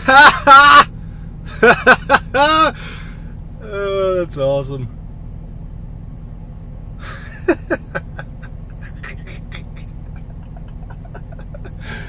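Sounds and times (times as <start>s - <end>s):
man laughing: 0.0s - 0.9s, 1.5s - 2.8s, 7.0s - 12.0s
car engine hum: 0.0s - 12.0s.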